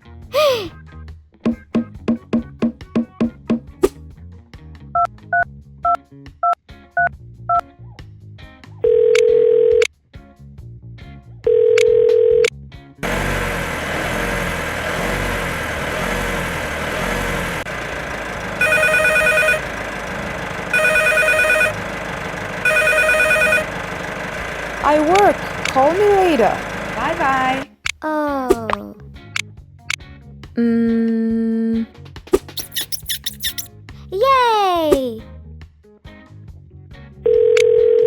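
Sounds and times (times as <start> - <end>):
phone ringback tones: 8.8 - 9.9, 11.5 - 12.5, 18.6 - 19.7, 20.7 - 21.9, 22.6 - 23.8, 37.3 - 38.0
keypad beeps: 18.6 - 19.6, 20.8 - 21.8, 22.6 - 23.6
warbling phone ring: 18.6 - 19.8, 20.7 - 21.9, 22.6 - 24.0.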